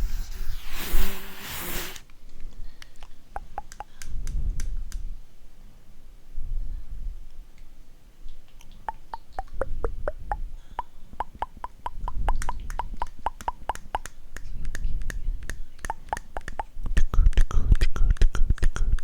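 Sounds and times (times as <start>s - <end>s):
tongue clicking: 3.0s - 4.1s, 8.5s - 14.5s, 15.8s - 19.0s.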